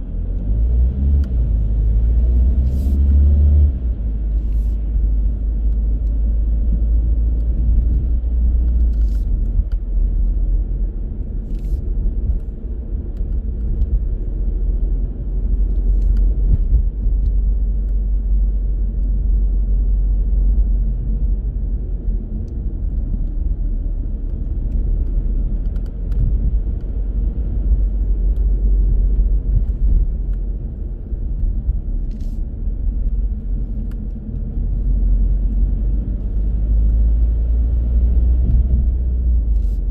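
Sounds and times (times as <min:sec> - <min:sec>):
car road and engine rumble: 0:00.0 - 0:39.9.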